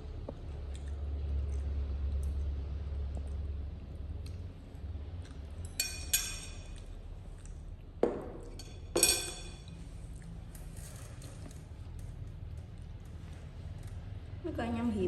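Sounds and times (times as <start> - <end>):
utensil clinking against dish: 5.7 - 6.9, 8.0 - 9.8.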